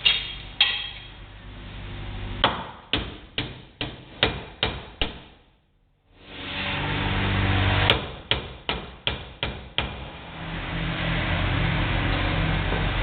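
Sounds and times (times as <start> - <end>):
hammer striking metal: 0.0 - 1.1
steady hum: 0.0 - 13.0.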